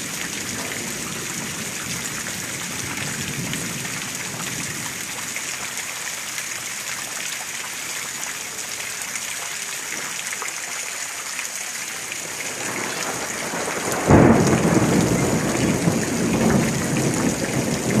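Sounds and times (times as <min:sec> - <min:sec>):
heavy rain falling: 0:00.0 - 0:18.0
thunder clap and rumble: 0:12.4 - 0:18.0.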